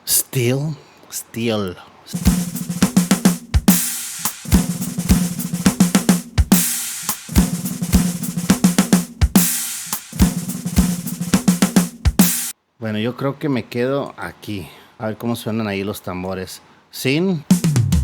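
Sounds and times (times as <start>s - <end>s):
drum kit kick and snare: 2.2s - 12.5s, 17.5s - 18.0s.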